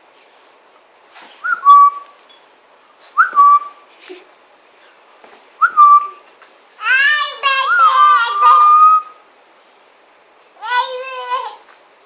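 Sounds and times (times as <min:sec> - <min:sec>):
whistle-like squeaks: 0:03.2 - 0:03.8, 0:07.6 - 0:09.2.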